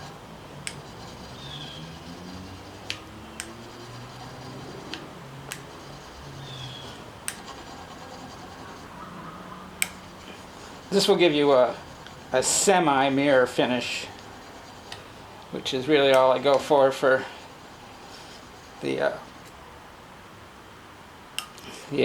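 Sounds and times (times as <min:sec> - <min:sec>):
blade scraping on sharpening plate: 0:00.0 - 0:09.0, 0:09.7 - 0:15.4, 0:16.0 - 0:19.6
sharp clicks: 0:00.0 - 0:09.0, 0:09.8 - 0:19.6, 0:21.4 - 0:21.7.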